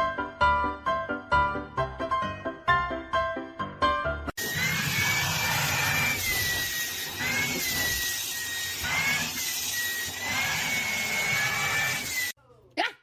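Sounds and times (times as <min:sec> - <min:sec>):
electric motor whirring: 0:04.4 - 0:12.4.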